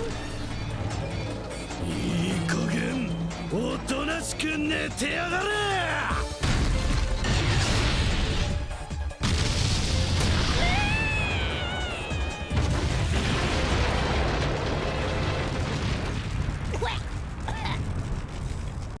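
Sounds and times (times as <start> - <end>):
soundtrack music: 0.0 - 15.8
wavering falling cry: 10.5 - 12.7
heavy rumbling crash effects: 12.5 - 19.0.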